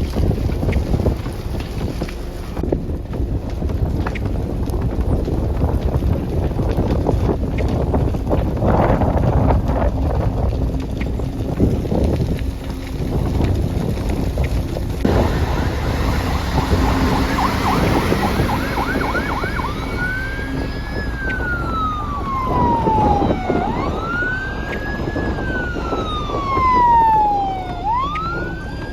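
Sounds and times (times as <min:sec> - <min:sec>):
traffic noise: 0:00.0 - 0:28.9
wind: 0:00.0 - 0:28.9
emergency siren wailing: 0:08.7 - 0:28.9.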